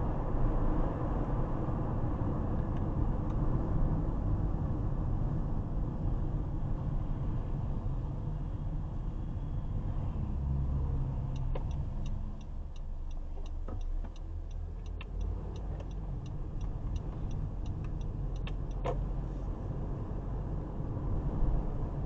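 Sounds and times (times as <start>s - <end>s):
car road and engine noise: 0.0s - 22.0s
turn signal ticking: 11.1s - 19.3s.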